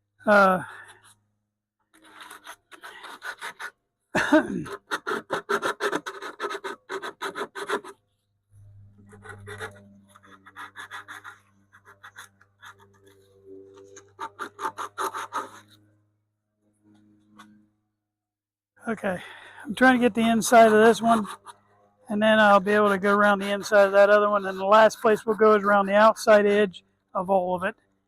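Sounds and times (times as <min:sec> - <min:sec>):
sandpaper rubbing on wood: 0:02.0 - 0:03.7, 0:04.7 - 0:08.0, 0:09.2 - 0:13.1, 0:14.0 - 0:15.8, 0:20.0 - 0:21.5, 0:22.3 - 0:26.3.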